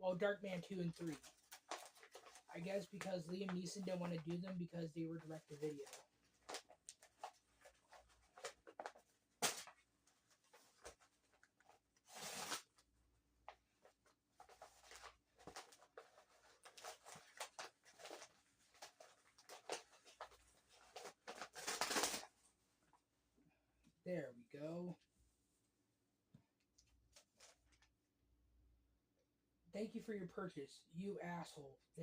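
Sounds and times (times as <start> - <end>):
packaging handled and opened: 0.8 - 22.3
packaging rustling and scraping: 0.9 - 4.6, 5.2 - 12.8, 13.8 - 22.3.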